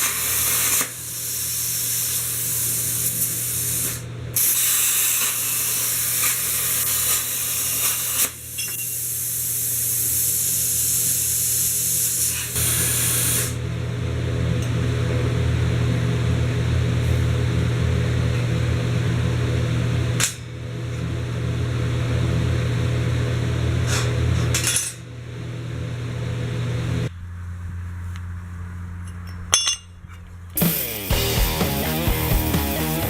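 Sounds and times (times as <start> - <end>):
power tool humming: 30.6 - 33.0
rock music: 30.6 - 33.0.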